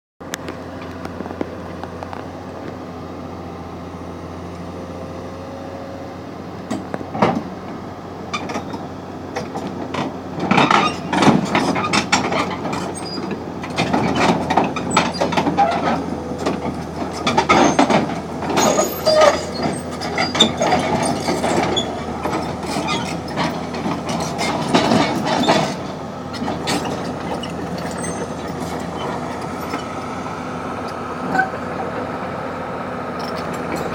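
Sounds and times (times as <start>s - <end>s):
excavator engine running: 0.2s - 33.9s
steel tracks clanking and squeaking: 6.7s - 32.1s, 33.1s - 33.9s.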